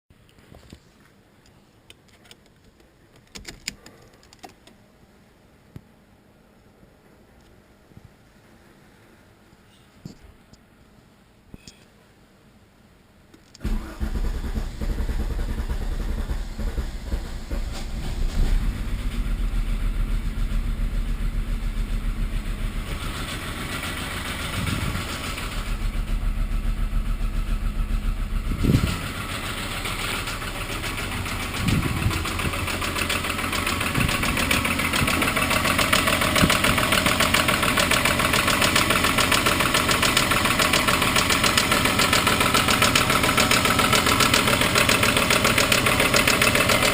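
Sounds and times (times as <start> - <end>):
car engine knocking and revving: 13.7 - 46.9.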